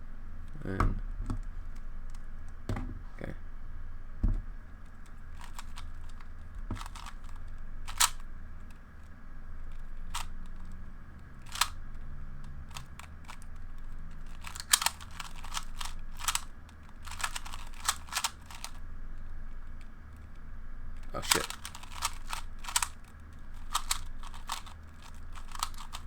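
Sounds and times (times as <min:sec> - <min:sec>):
puzzle cube layers clicking: 0:05.4 - 0:08.2, 0:09.7 - 0:10.8, 0:11.4 - 0:11.8, 0:12.7 - 0:18.8, 0:21.0 - 0:26.0.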